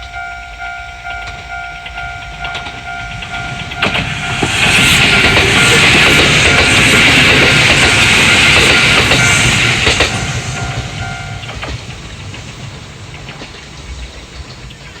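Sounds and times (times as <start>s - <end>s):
electric train passing on rails: 0.0s - 15.0s
wheels clicking over rail joints: 0.0s - 15.0s.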